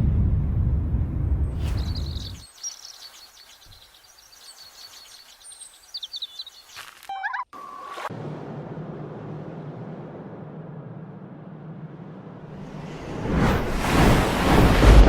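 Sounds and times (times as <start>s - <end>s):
low rumble: 0.0s - 2.4s, 8.1s - 15.0s
birds chirping: 1.5s - 8.1s
low hum: 7.6s - 15.0s.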